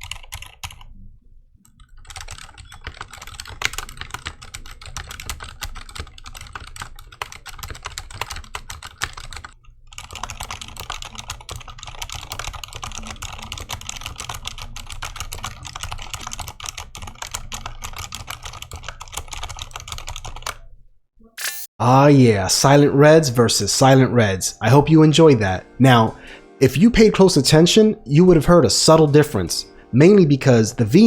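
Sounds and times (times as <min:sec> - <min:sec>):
fast mechanical keyboard typing: 0:00.0 - 0:00.9, 0:01.6 - 0:20.7.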